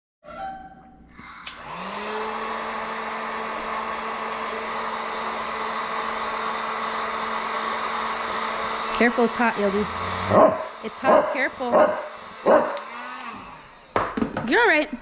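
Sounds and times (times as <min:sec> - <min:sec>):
hot-air blower running: 0:01.4 - 0:15.0.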